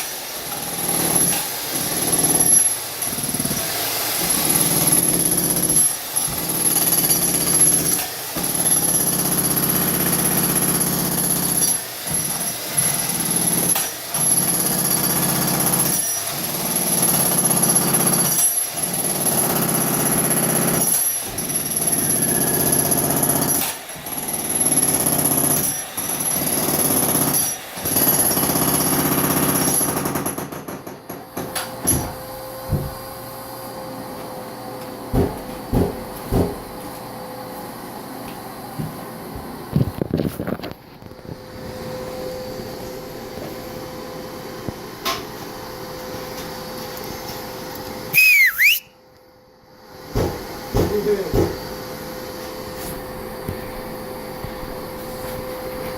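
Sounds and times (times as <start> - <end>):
jackhammer hammering: 0.0 - 32.0, 50.1 - 51.7.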